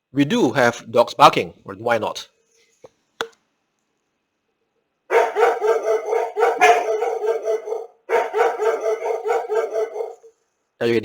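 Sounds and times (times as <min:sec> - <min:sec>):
dog barking: 0:05.1 - 0:10.3.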